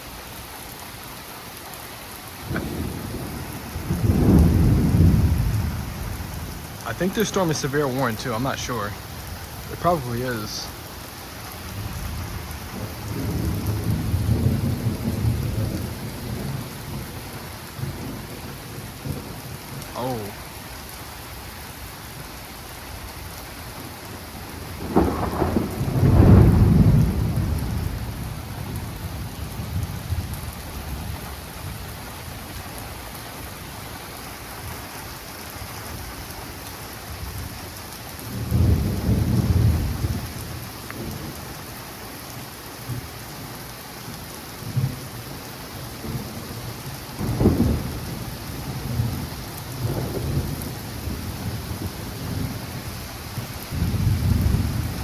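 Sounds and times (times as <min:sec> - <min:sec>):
steady rain: 0:00.0 - 0:55.0
thunder cracking and rumbling: 0:02.4 - 0:10.7, 0:11.7 - 0:20.4, 0:23.9 - 0:32.0, 0:37.2 - 0:41.6, 0:44.6 - 0:45.4, 0:46.0 - 0:55.0.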